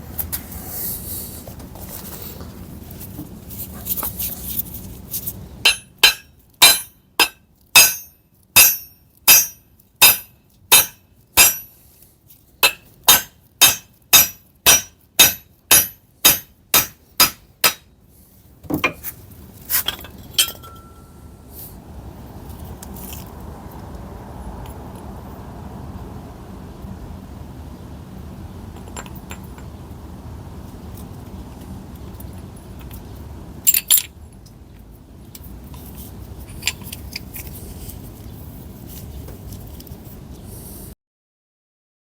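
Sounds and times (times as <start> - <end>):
metal clinking: 5.6 - 11.7, 19.9 - 21.2
hammer tapping on steel: 5.7 - 11.7, 12.6 - 17.9.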